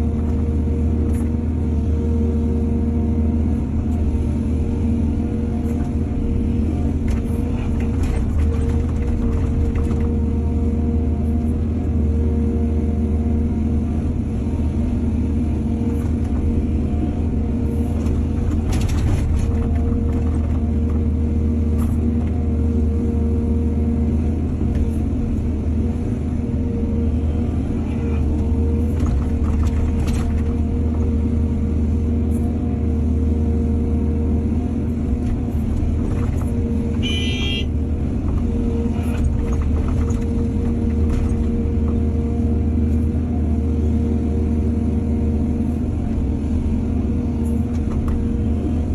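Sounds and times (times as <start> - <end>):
diesel excavator engine rumbling: 0.0 - 48.9.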